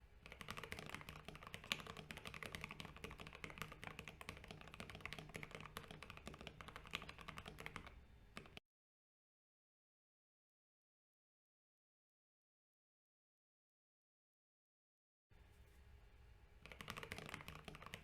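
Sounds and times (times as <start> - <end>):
fast mechanical keyboard typing: 0.2 - 8.6, 16.6 - 18.0.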